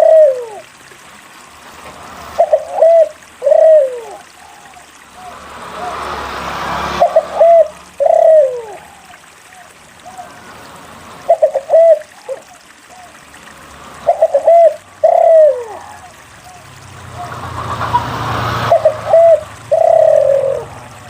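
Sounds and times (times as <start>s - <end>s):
dove cooing: 0.0s - 0.7s, 2.4s - 5.3s, 7.0s - 10.4s, 11.3s - 13.2s, 14.0s - 17.3s, 18.7s - 21.0s.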